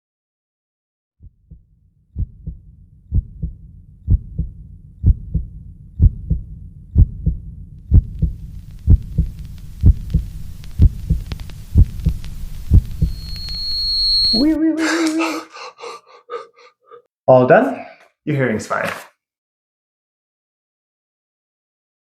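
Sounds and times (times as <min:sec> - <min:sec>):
heartbeat thumps: 0:01.2 - 0:13.4
faint hiss: 0:08.2 - 0:14.3.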